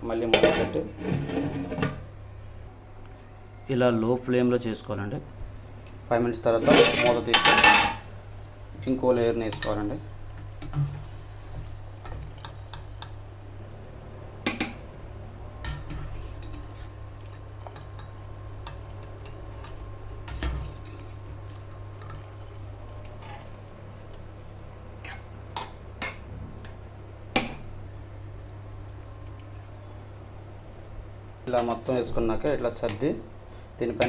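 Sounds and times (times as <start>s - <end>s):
steady low hum: 0.0s - 34.0s.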